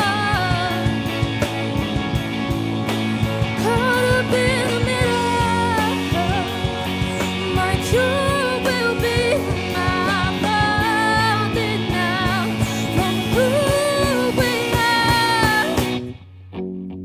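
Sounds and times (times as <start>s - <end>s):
person singing: 3.6s - 16.0s.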